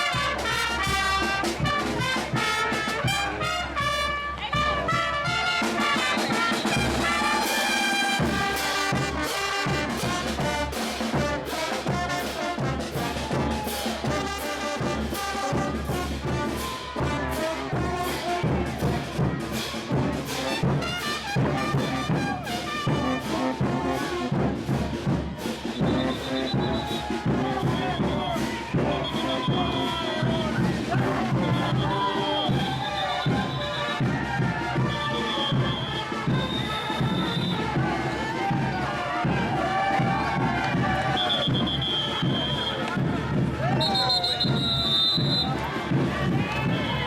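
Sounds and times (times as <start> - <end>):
brass band playing: 0.0 - 47.0
drum strokes: 4.9 - 17.1, 30.2 - 47.0.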